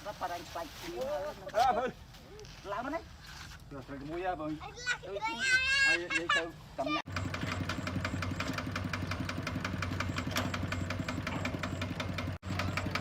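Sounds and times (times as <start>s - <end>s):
small engine ticking: 7.1s - 13.0s.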